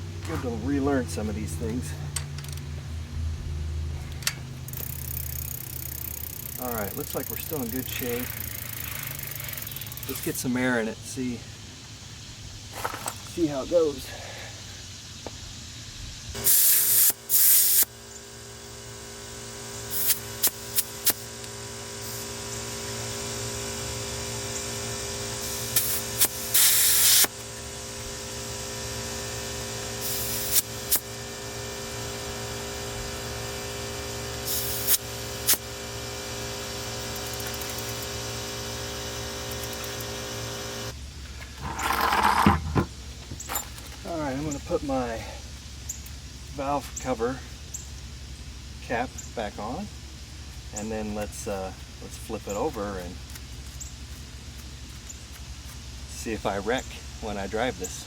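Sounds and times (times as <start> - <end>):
air compressor motor running: 3.8 - 11.6, 16.3 - 48.4
short loud air hisses: 16.4 - 17.9, 19.9 - 21.3, 25.4 - 27.4, 30.0 - 31.1, 34.4 - 35.6.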